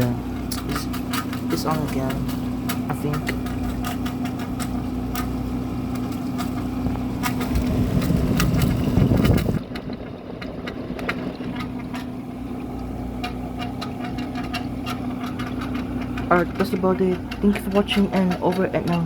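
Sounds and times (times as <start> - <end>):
scattered clicks: 0.0 - 5.3, 12.7 - 19.0
air conditioner humming: 0.0 - 19.0.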